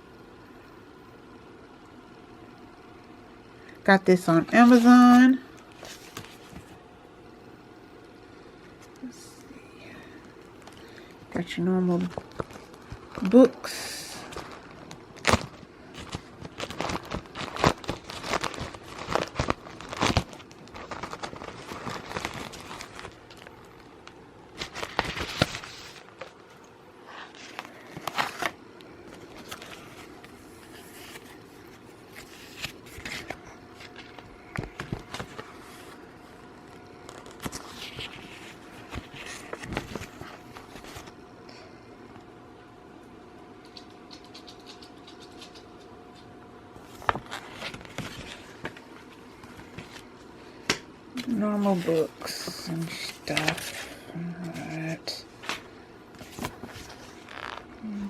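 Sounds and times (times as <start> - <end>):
paper and plastic crinkling: 4.5 - 6.8, 11.9 - 36.0, 36.6 - 41.2, 46.8 - 50.3, 51.2 - 57.7.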